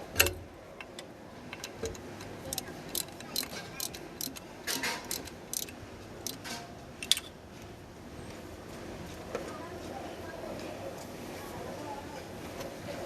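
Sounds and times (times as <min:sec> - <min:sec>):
metallic clicks of hand tools: 0:00.0 - 0:07.3.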